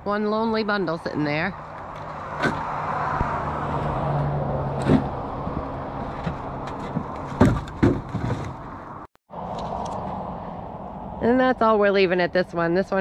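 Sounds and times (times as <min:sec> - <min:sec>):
sharp knocks: 0:06.2 - 0:08.6.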